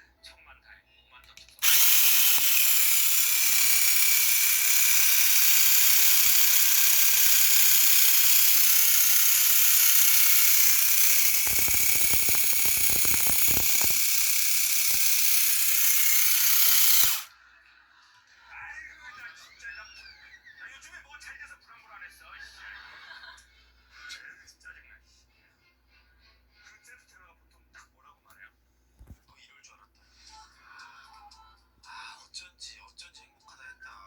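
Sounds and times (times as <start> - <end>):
toy motor whirring: 1.5 - 17.3.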